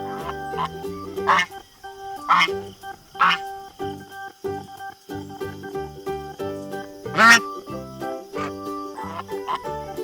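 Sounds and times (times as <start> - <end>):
goose honking: 0.0 - 1.6, 2.2 - 2.6, 3.2 - 3.5, 7.1 - 7.5, 8.4 - 9.7
background music with held notes: 0.0 - 10.0.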